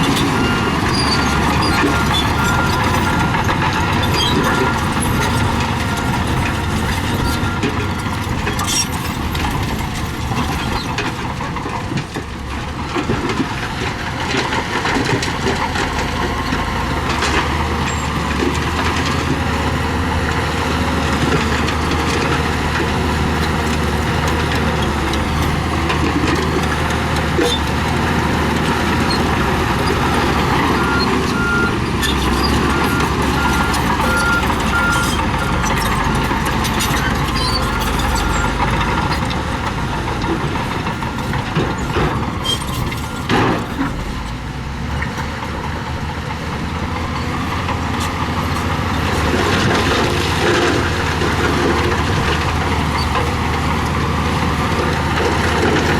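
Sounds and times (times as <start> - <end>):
heavy diesel machinery running: 0.0 - 55.9
reversing alarm beeping: 0.2 - 8.1, 29.9 - 36.2.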